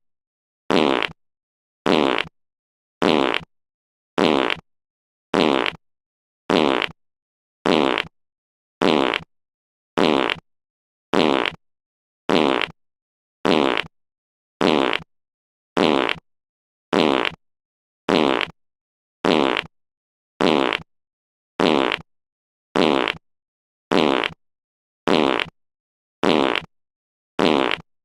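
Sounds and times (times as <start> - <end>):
fart sound effect: 0.7 - 1.2, 1.9 - 2.3, 3.0 - 3.5, 4.2 - 4.6, 5.3 - 5.8, 6.5 - 7.0, 7.6 - 8.1, 8.8 - 9.3, 10.0 - 10.4, 11.1 - 11.6, 12.3 - 12.8, 13.4 - 13.9, 14.6 - 15.1, 15.8 - 16.2, 16.9 - 17.4, 18.1 - 18.6, 19.2 - 19.7, 20.4 - 20.9, 21.6 - 22.1, 22.8 - 23.2, 23.9 - 24.4, 25.1 - 25.5, 26.2 - 26.7, 27.4 - 27.9.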